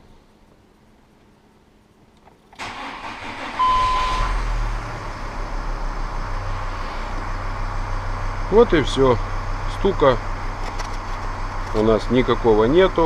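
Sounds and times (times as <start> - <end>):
diesel engine cranking: 2.4 - 13.0
diesel engine idling: 2.6 - 13.0
short beep: 3.5 - 4.3.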